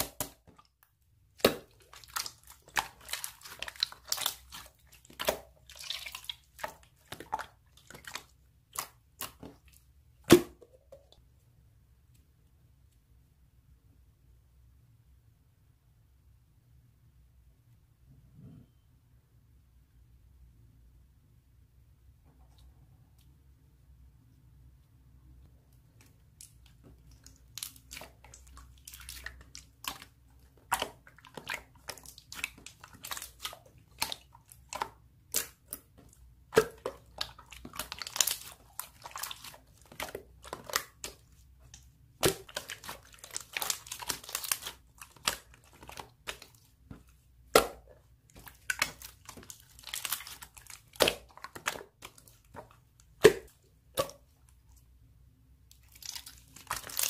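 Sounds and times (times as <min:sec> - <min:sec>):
slime squishing and popping: 0:00.0 - 0:10.8, 0:26.0 - 0:54.4, 0:55.7 - 0:57.0.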